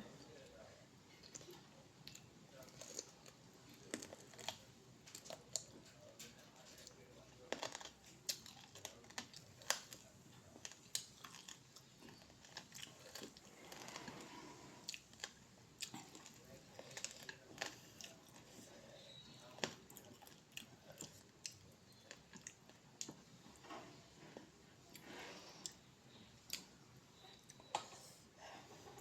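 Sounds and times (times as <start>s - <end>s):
person chewing crunchy food: 1.2s - 5.7s, 7.5s - 10.0s, 10.6s - 18.6s, 19.6s - 23.2s.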